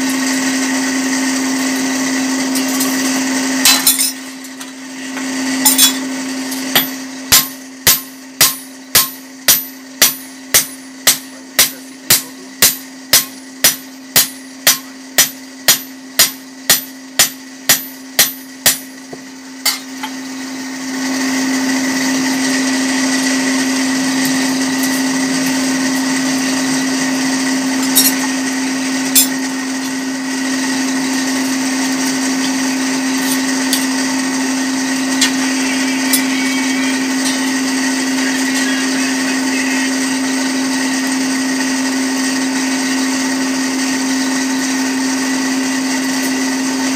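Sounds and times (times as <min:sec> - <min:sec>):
electric grinder sharpening: 0:00.0 - 0:12.5, 0:19.6 - 0:46.9
hammer ringing on anvil: 0:03.6 - 0:04.3, 0:05.6 - 0:20.2, 0:27.8 - 0:28.3, 0:29.1 - 0:29.4, 0:35.2 - 0:40.0
electric blower hum: 0:19.1 - 0:46.9.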